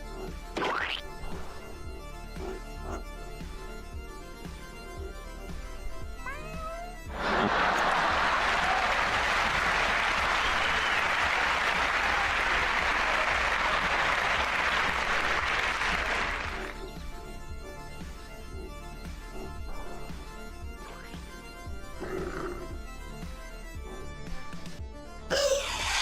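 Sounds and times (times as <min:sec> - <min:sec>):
applause: 0:07.1 - 0:16.7.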